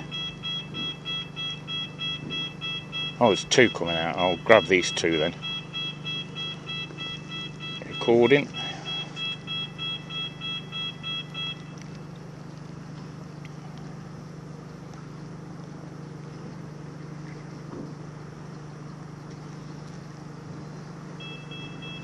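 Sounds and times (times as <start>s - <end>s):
rapid electronic beeps: 0.0s - 11.6s
drone hovering hum: 0.0s - 22.0s.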